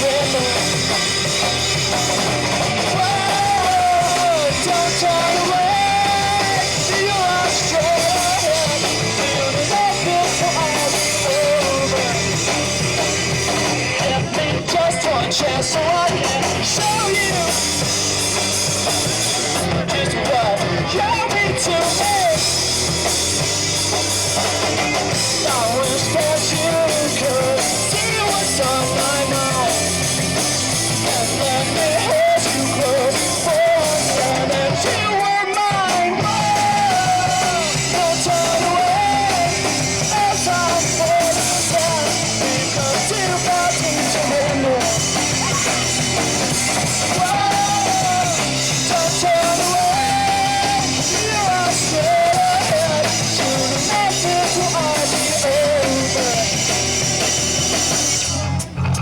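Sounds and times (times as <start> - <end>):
bass guitar: 0.0 - 59.0
drum kit: 0.0 - 59.0
electric guitars: 0.0 - 59.0.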